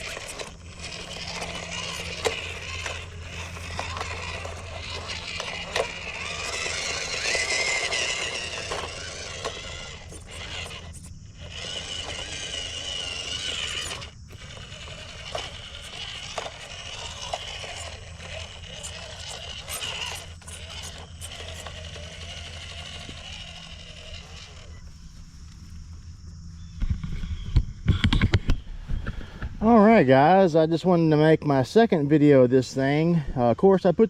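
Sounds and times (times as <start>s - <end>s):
toy truck motor whine: 0.0s - 25.2s
tires scraping and clicking: 0.0s - 25.7s.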